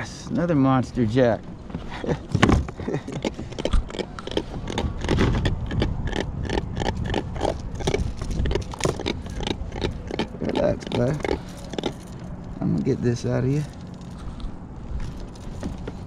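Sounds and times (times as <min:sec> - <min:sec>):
fish croaking grunts: 0:03.0 - 0:12.0.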